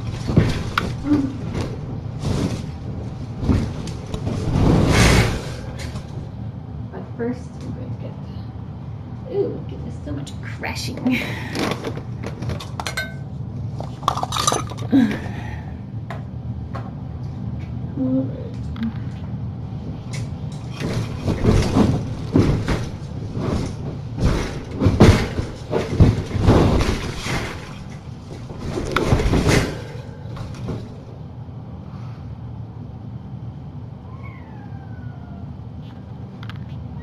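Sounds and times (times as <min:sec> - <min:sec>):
rustling and scraping handling noise: 0:00.0 - 0:06.2, 0:11.7 - 0:14.9
low hum: 0:00.0 - 0:37.0
cat meowing: 0:34.0 - 0:35.6.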